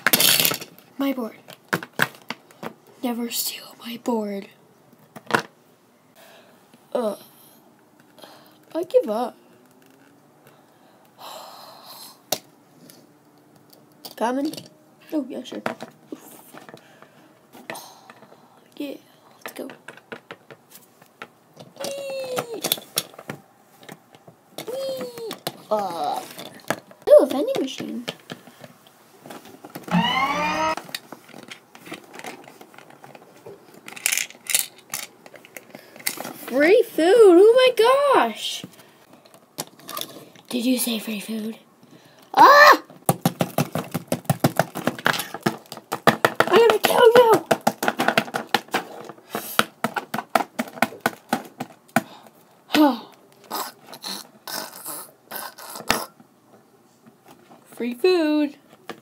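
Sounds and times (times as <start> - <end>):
toys scuffling and scraping: 19.5 - 37.0
falling vocal squeal: 29.9 - 30.8
plastic toys clicking: 33.8 - 36.3, 43.0 - 52.0.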